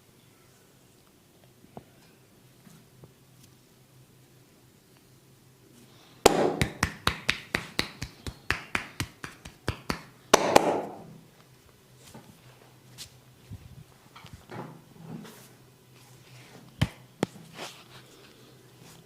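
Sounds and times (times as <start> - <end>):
hands slapping body: 6.3 - 11.1, 16.8 - 17.4.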